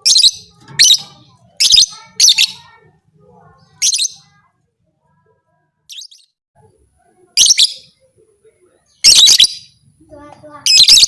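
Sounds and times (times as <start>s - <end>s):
bird shrill calls: 5.9s - 6.3s.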